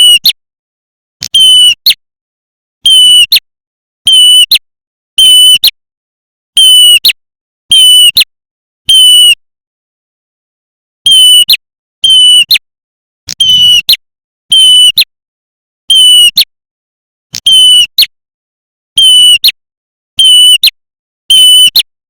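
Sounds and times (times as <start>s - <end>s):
recorded bird call: 0.0s - 0.4s, 1.3s - 2.0s, 2.8s - 3.4s, 4.0s - 4.6s, 5.2s - 5.7s, 6.6s - 8.3s, 8.9s - 9.4s, 11.1s - 12.6s, 13.4s - 15.1s, 15.9s - 16.5s, 17.4s - 18.1s, 19.0s - 19.6s.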